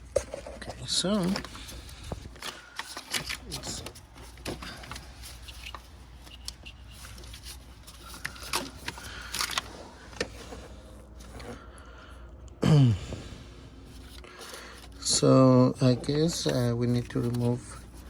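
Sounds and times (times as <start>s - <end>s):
tools clicking and scraping on metal: 0.2s - 10.3s
person grunting: 12.6s - 13.3s.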